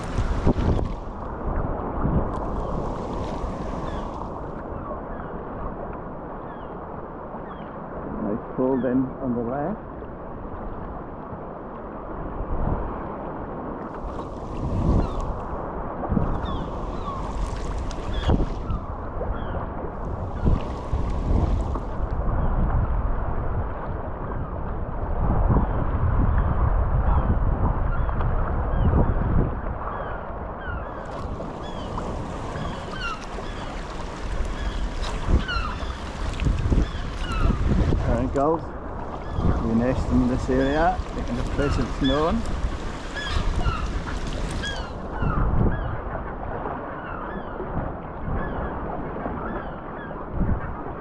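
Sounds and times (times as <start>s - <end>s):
wind buffeting microphone: 0.0s - 5.9s, 13.9s - 51.0s
water sloshing around kayak: 0.0s - 6.0s, 13.8s - 15.5s, 16.1s - 22.2s, 30.9s - 45.4s
sea: 0.0s - 51.0s
gulls calling: 3.7s - 5.4s, 18.0s - 19.6s, 29.9s - 45.9s.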